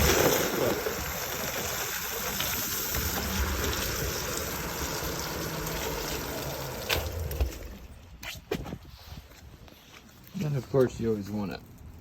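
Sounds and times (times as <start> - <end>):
wheels rolling through puddle: 0.0 - 8.3.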